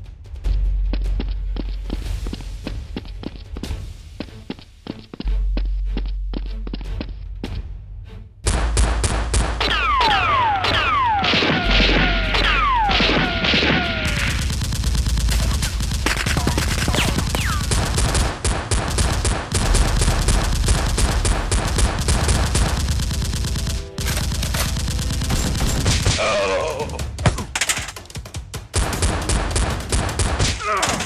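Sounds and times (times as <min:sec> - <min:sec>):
rapid gunfire: 0:08.5 - 0:26.3, 0:27.2 - 0:31.0.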